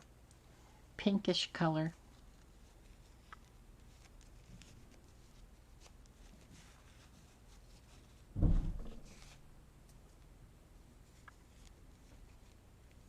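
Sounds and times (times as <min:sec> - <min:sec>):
dull low thump: 0:08.4 - 0:09.2.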